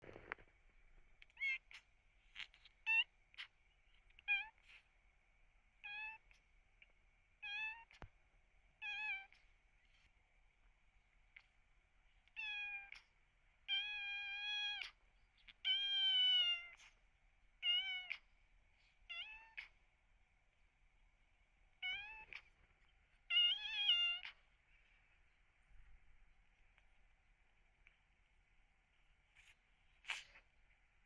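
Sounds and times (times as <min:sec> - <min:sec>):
kitten meowing: 0:01.3 - 0:01.8, 0:02.4 - 0:03.5, 0:04.2 - 0:04.7, 0:05.8 - 0:06.3, 0:07.4 - 0:08.0, 0:08.8 - 0:09.4, 0:12.4 - 0:13.0, 0:13.7 - 0:16.9, 0:17.6 - 0:18.3, 0:19.1 - 0:19.7, 0:21.8 - 0:22.5, 0:23.3 - 0:24.4.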